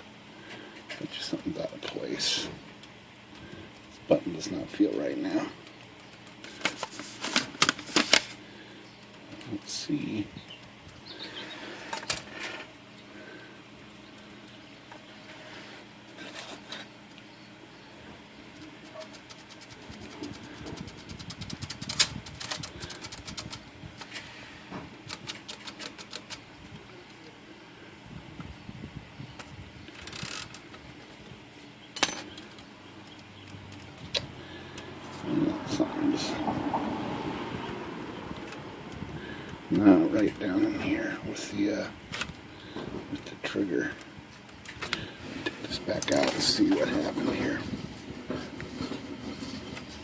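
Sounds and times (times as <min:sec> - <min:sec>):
typewriter mechanism rasp: 0:18.8 - 0:23.6, 0:25.1 - 0:26.4
typewriter mechanism clicking: 0:20.8 - 0:23.6.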